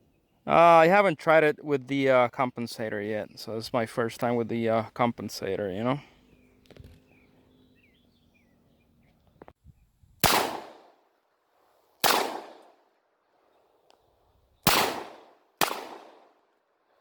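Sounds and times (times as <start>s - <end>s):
gunshot echo: 10.2s - 11.0s, 12.0s - 12.8s, 14.6s - 16.4s
pistol shots: 10.2s - 11.0s, 12.0s - 12.8s, 14.6s - 16.4s.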